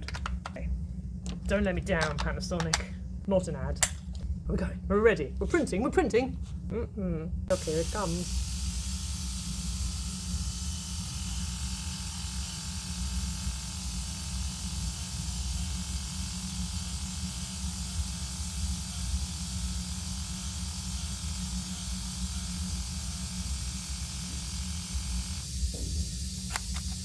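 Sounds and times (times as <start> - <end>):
even hiss: 7.5 - 10.2
label maker motor whirring: 7.5 - 27.0.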